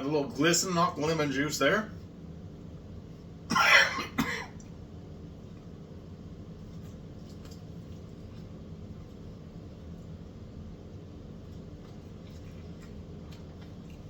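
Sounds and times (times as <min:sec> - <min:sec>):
low room hum: 0:00.0 - 0:14.0
man coughing: 0:03.5 - 0:04.6.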